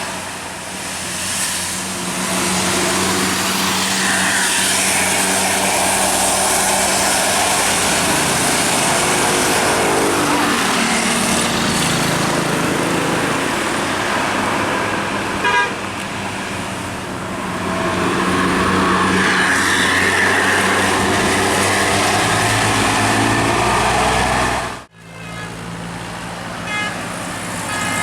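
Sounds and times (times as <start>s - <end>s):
buses and traffic passing: 0.0s - 28.0s
horn toot: 15.4s - 15.8s, 26.6s - 28.0s.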